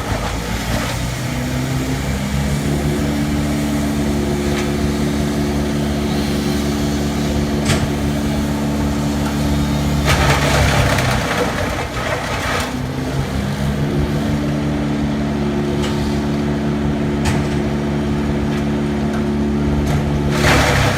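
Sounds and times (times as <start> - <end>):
harsh rough shredding noise: 0.0 - 18.9, 19.6 - 20.9
shredder engine running: 0.0 - 20.9.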